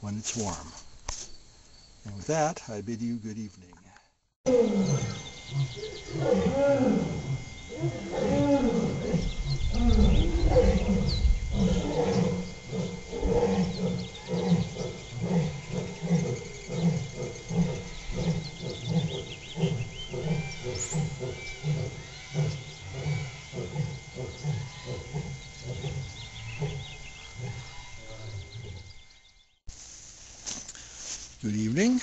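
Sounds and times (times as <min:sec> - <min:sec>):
lions roaring: 0:04.5 - 0:29.0.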